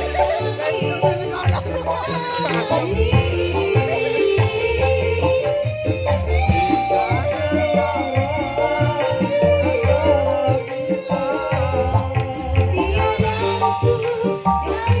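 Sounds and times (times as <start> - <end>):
loud music with drum beat: 0.0 - 15.0.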